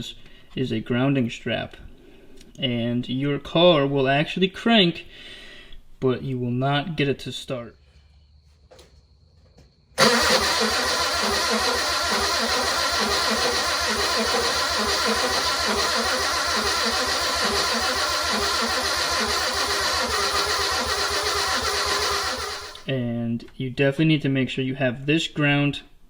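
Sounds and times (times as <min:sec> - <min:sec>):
car engine running: 0:10.0 - 0:22.9.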